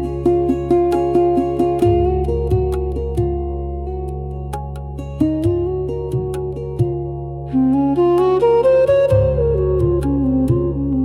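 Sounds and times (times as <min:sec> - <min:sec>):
plucked melodic notes: 0:00.0 - 0:11.0.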